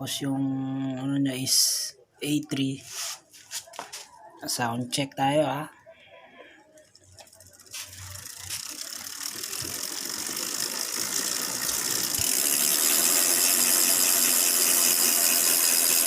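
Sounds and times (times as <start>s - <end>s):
bicycle hub clicking buzz: 6.9s - 16.0s.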